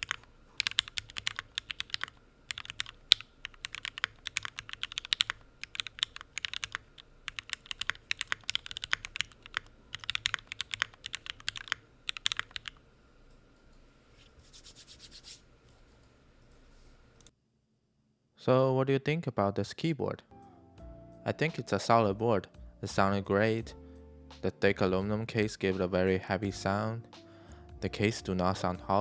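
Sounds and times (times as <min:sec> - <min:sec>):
mechanical keyboard typing: 0:00.0 - 0:12.8.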